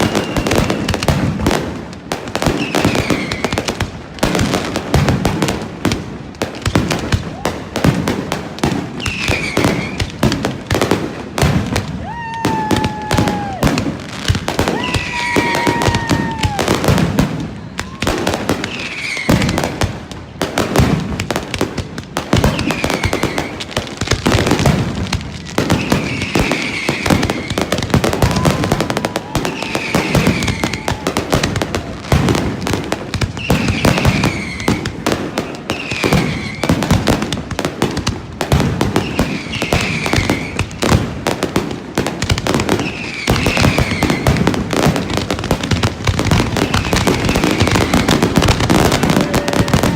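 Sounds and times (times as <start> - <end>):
falling firework whistles: 0.0 - 1.2, 2.4 - 3.8, 8.9 - 10.1, 11.8 - 13.8, 14.6 - 19.8, 22.4 - 23.7, 25.4 - 31.9, 33.2 - 37.0, 38.9 - 41.0, 42.7 - 44.8, 46.3 - 49.9
fireworks bangs and crackling: 0.0 - 49.9.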